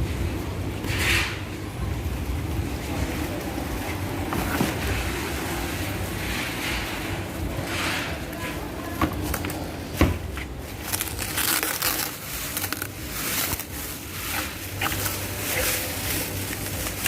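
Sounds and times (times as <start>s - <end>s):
packaging rustling and crinkling: 9.2s - 17.0s.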